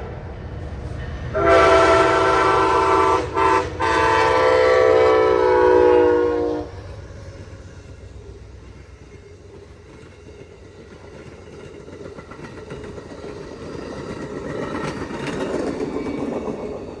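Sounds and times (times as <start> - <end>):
train rumble and wheel clatter: 0.0 - 17.0.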